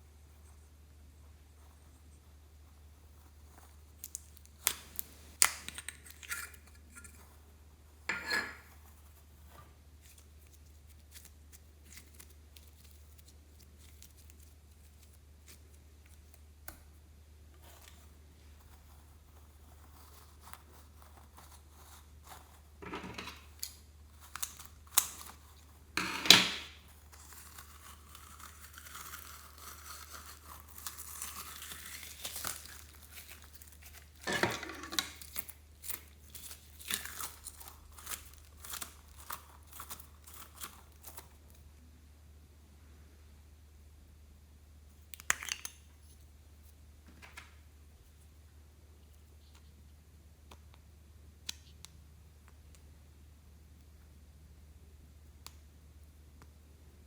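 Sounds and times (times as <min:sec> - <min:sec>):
slime crinkling and crackling: 0:03.1 - 0:06.7, 0:08.8 - 0:17.0, 0:23.4 - 0:26.0, 0:26.7 - 0:41.6.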